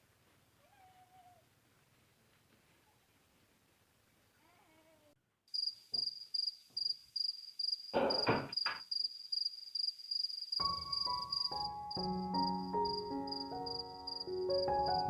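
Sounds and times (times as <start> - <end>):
insect chirping: 5.5 - 15.0.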